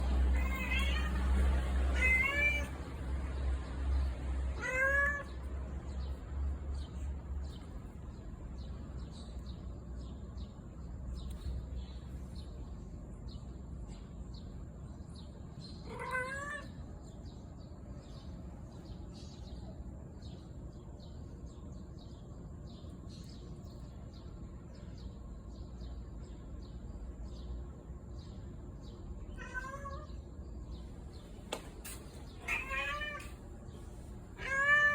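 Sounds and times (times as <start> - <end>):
cat meowing: 0.3 - 2.8, 4.6 - 5.4, 15.8 - 16.8, 29.3 - 30.2, 32.4 - 33.4, 34.4 - 34.9.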